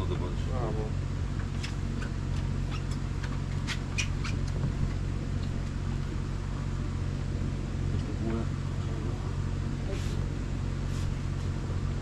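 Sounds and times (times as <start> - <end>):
boat engine humming: 0.0 - 12.0
short high squeaks: 1.6 - 3.0, 3.6 - 4.4.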